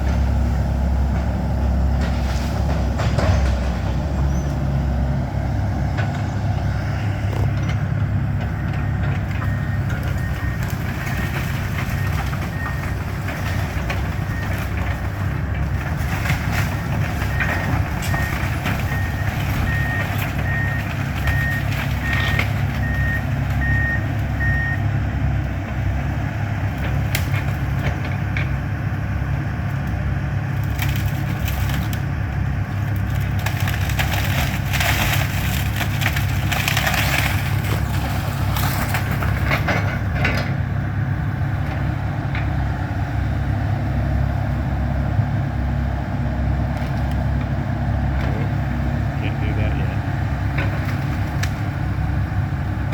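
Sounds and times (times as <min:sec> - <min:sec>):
excavator diesel engine running: 0:00.0 - 0:52.9
wood splintering and crushing: 0:08.4 - 0:24.8, 0:29.7 - 0:40.7, 0:46.2 - 0:52.9.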